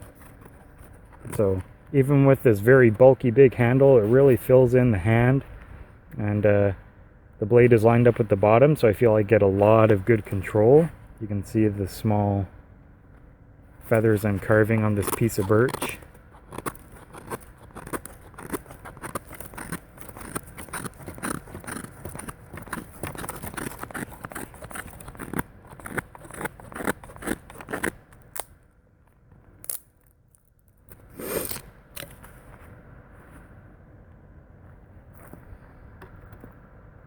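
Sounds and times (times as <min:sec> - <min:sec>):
knife scraping wood: 0:14.0 - 0:28.5, 0:31.1 - 0:32.1.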